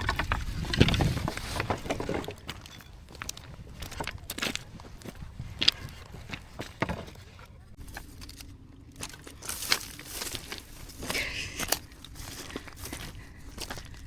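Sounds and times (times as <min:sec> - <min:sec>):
footsteps on dry forest floor: 0:00.5 - 0:14.0
twigs and leaves snapping: 0:07.8 - 0:14.0.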